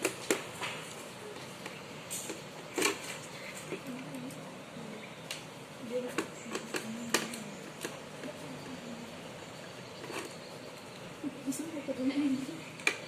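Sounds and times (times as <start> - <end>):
faint murmuring voices: 2.8 - 13.0
plastic parts clicking and tapping: 6.1 - 8.4.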